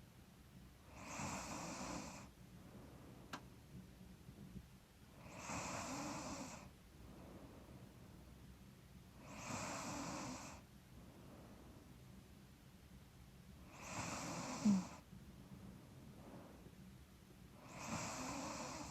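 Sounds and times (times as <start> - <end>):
light snore: 0.9 - 2.3, 5.2 - 6.7, 9.2 - 10.6, 13.6 - 15.1, 17.6 - 18.9
woman breathing heavily through nose: 14.0 - 15.1.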